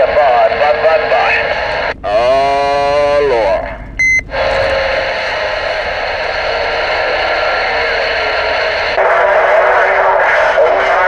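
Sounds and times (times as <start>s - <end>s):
radio static hiss: 0.0s - 11.0s
short electronic beep: 4.0s - 4.8s.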